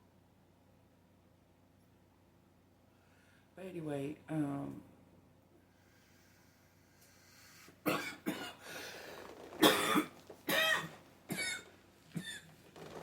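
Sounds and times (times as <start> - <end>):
woman clearing throat: 7.9 - 8.6, 9.6 - 11.6
woman coughing: 7.9 - 8.6, 9.6 - 11.6.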